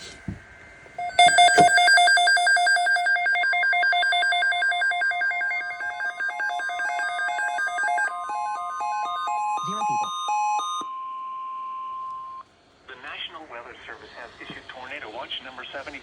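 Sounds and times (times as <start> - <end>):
warbling emergency alert tone: 1.0 - 12.4
steady alert tone: 4.1 - 12.4.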